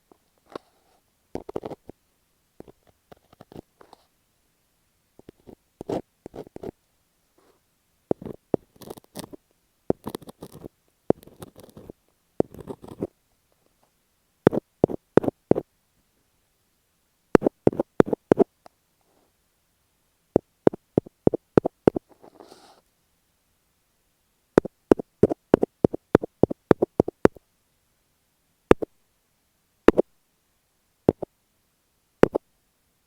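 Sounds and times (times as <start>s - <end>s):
fingertips scratching on microphone: 0.5s - 1.9s, 2.6s - 4.1s, 5.2s - 6.8s, 8.1s - 13.1s, 14.5s - 15.6s, 17.4s - 18.5s, 20.7s - 22.8s, 24.6s - 27.4s, 32.2s - 32.4s.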